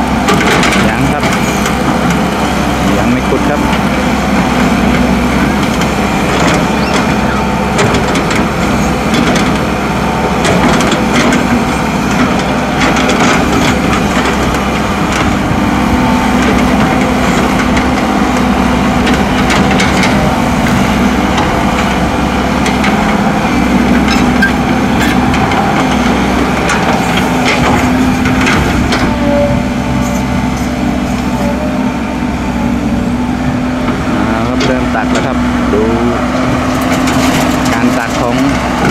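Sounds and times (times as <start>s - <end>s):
heavy diesel engines running: 0.0s - 38.9s
sharp knocks and clanks: 0.3s - 2.2s, 3.0s - 9.6s, 23.9s - 29.2s.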